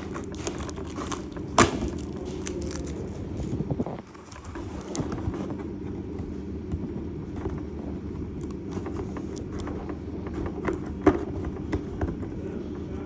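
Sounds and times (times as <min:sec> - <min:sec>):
toy packaging clicks and rustles: 0:00.0 - 0:05.2
steady low hum: 0:00.0 - 0:13.0.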